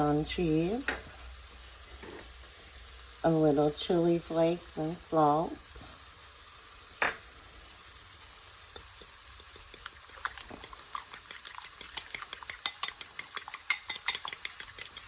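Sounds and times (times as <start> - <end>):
spinach sizzling in a frying pan: 0.0 - 15.0
whisking eggs in a bowl: 8.2 - 15.0.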